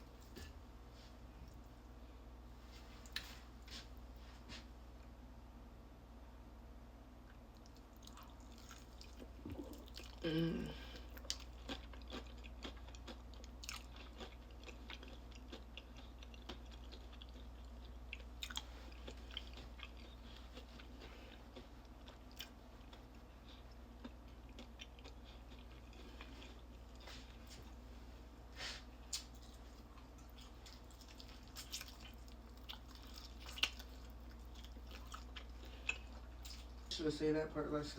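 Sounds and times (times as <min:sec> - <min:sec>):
person chewing crispy food: 0:07.3 - 0:27.8, 0:28.7 - 0:36.9.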